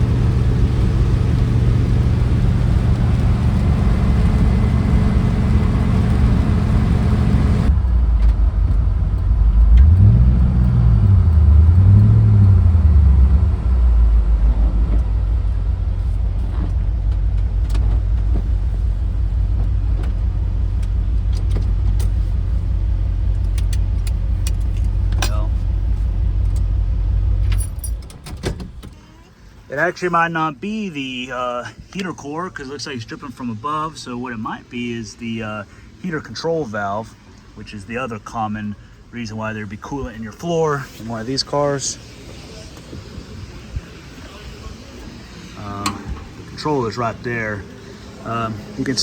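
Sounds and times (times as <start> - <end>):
car engine idling and revving: 0.0 - 29.7, 37.0 - 49.0.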